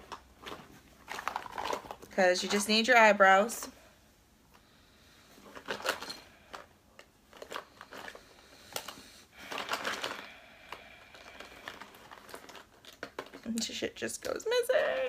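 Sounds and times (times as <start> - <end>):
cosmetics clicking and rustling: 0.0 - 3.6, 5.4 - 15.0.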